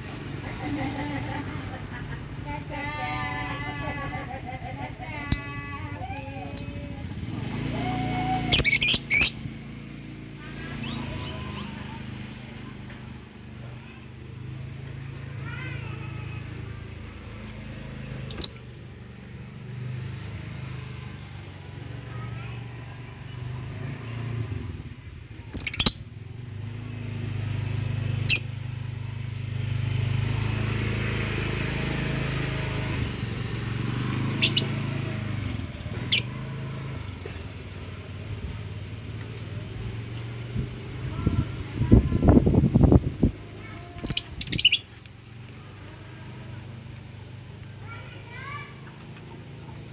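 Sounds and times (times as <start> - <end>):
lovebirds shrill calls: 8.3 - 9.4, 18.2 - 19.4, 25.5 - 26.7, 28.3 - 28.5, 34.3 - 34.8, 36.1 - 36.4, 44.0 - 45.7.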